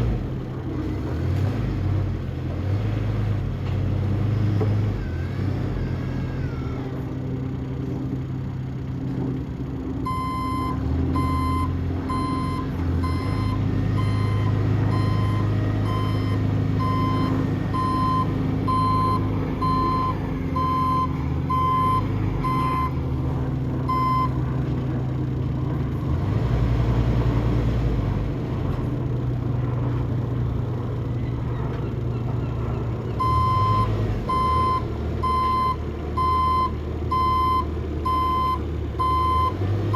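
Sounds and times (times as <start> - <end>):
forklift engine running: 0.0 - 39.9
reversing alarm beeping: 10.1 - 23.0, 23.9 - 24.4, 33.2 - 39.6.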